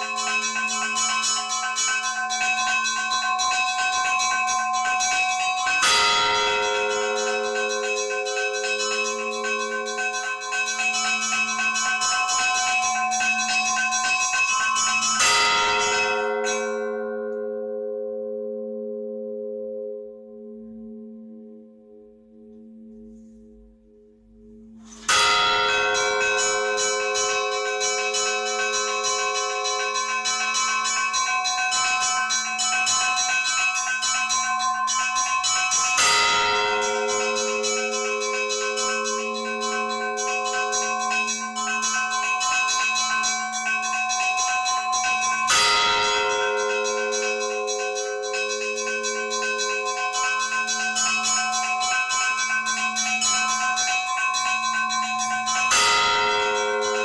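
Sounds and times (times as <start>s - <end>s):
church bells ringing: 0.0s - 23.0s, 24.8s - 57.0s.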